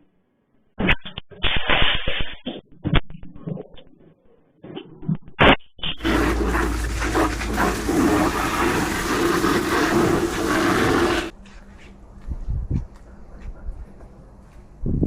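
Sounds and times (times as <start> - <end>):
pressure washer spraying water: 6.0 - 11.3.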